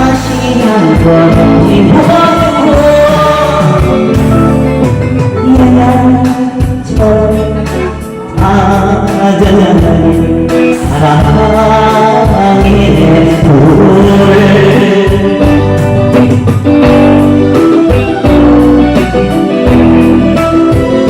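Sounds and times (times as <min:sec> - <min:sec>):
person singing long notes: 0:00.0 - 0:16.1
live band music: 0:00.0 - 0:21.0.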